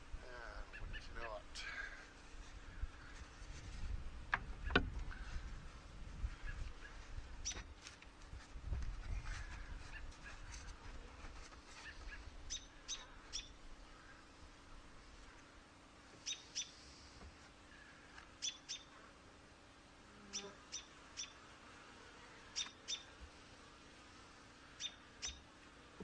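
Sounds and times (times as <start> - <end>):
small bird chirping: 11.8 - 13.6, 16.2 - 16.8, 18.4 - 18.9, 20.3 - 21.4, 22.6 - 23.1, 24.8 - 25.5.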